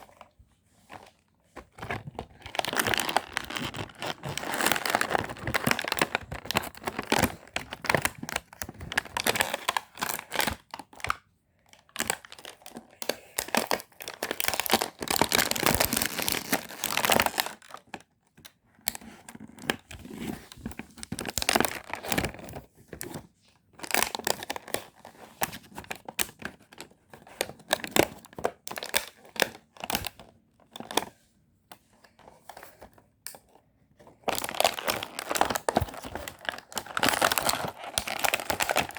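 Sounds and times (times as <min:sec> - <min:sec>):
packaging crinkling and tearing: 0:01.7 - 0:11.1, 0:11.9 - 0:18.0, 0:19.5 - 0:23.2, 0:23.8 - 0:30.1, 0:34.2 - 0:38.9.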